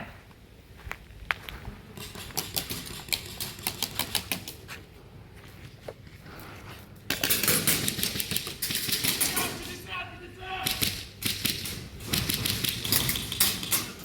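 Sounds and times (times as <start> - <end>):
airsoft guns firing: 7.1 - 9.9, 10.5 - 14.0.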